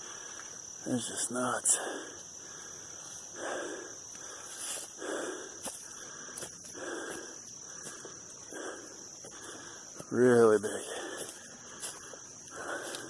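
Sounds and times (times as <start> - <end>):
insects chorus: 0.0 - 13.0.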